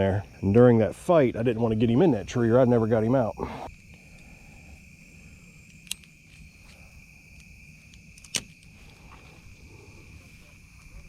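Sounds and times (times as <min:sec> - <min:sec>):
insects trilling: 0:00.0 - 0:11.0
sharp clicks: 0:05.7 - 0:06.5, 0:07.4 - 0:08.8.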